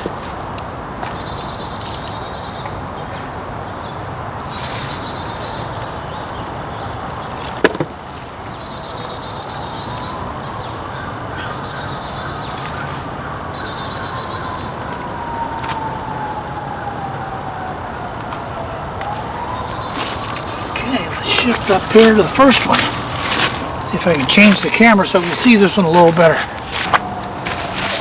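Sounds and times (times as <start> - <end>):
distant siren: 0.8 - 7.4, 8.3 - 28.0
small bird singing: 0.9 - 7.6, 8.5 - 15.3, 19.3 - 26.4.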